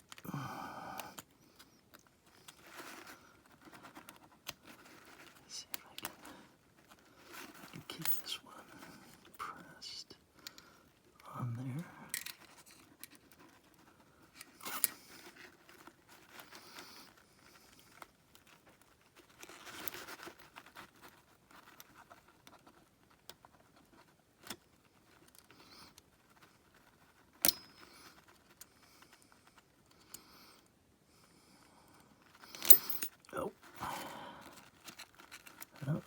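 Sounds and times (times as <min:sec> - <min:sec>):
metal parts and tools clicking: 0:32.5 - 0:33.2.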